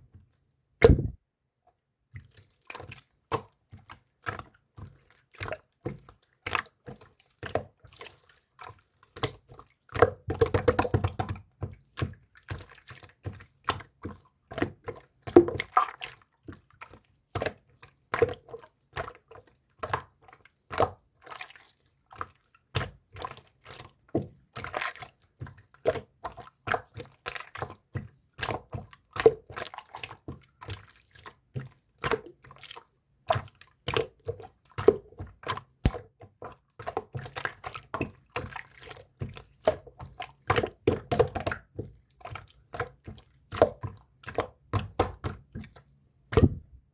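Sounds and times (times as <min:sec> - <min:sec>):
slime squishing and popping: 0:00.8 - 0:01.2.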